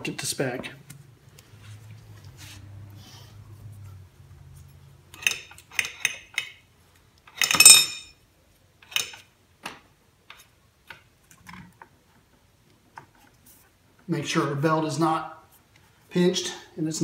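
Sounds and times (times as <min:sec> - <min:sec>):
metal tools clinking: 0:07.3 - 0:08.2.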